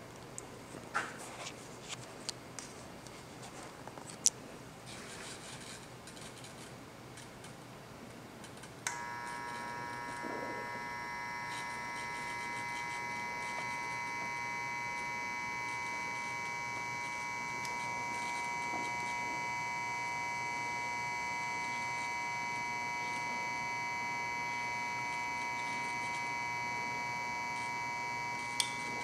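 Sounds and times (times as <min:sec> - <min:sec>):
led bulb electrical buzz: 0:08.5 - 0:29.0.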